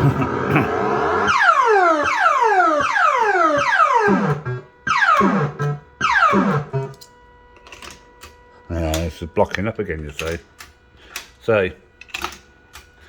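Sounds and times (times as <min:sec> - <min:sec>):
falling electronic pitch sweeps: 0:00.0 - 0:06.9.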